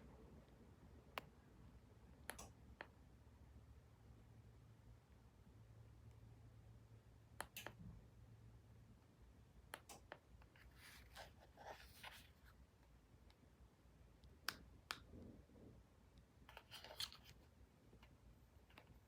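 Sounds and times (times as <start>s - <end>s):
faint low hum: 0.0s - 19.0s
soft clicks: 2.2s - 3.0s.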